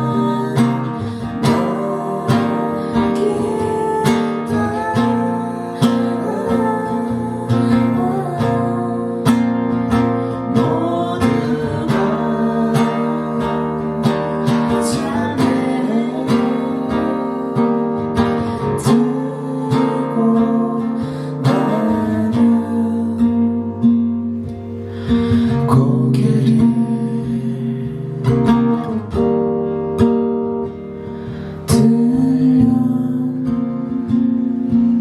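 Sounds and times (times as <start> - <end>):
acoustic guitar playing: 0.0 - 35.0.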